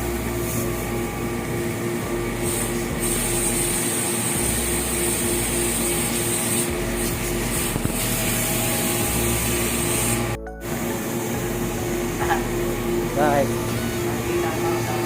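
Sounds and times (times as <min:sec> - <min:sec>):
small motor hissing: 0:02.3 - 0:11.5.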